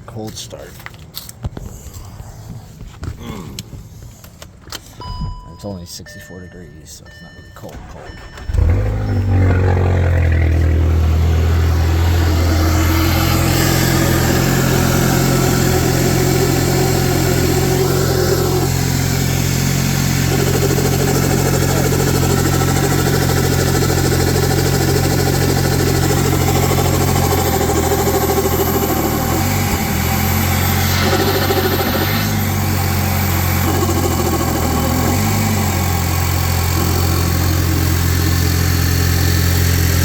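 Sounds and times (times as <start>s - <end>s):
car engine idling: 7.6s - 40.0s
turbo fluttering: 8.1s - 40.0s.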